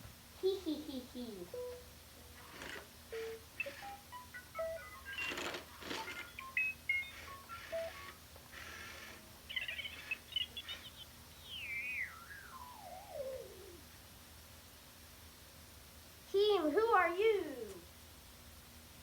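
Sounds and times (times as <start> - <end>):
toy robot beeps and warbles: 1.5 - 1.8, 2.4 - 13.8
falling warbling whistle: 11.4 - 13.9.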